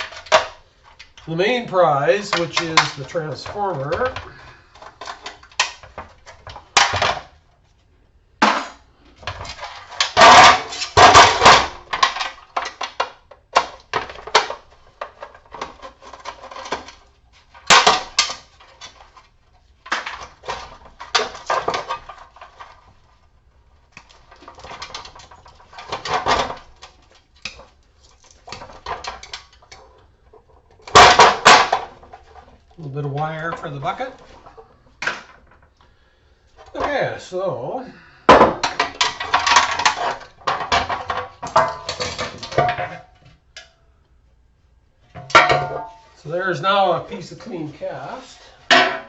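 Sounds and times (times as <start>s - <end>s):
metal parts clanking: 0.0s - 7.2s, 38.3s - 43.7s.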